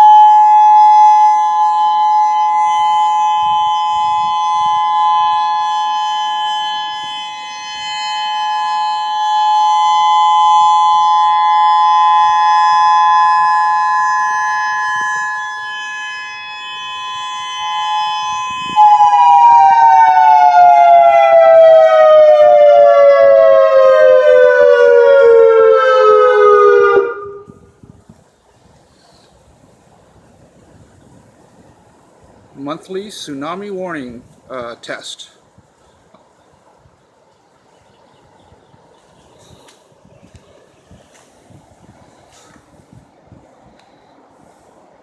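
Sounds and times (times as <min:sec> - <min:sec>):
two-tone warning siren: 0:00.0 - 0:27.8.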